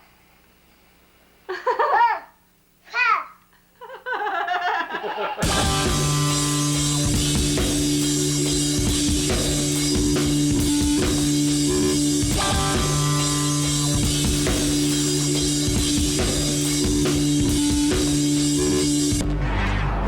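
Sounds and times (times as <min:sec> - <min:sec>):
rock music with drums and guitar: 0:05.4 - 0:20.0
steady held low notes: 0:05.4 - 0:20.0.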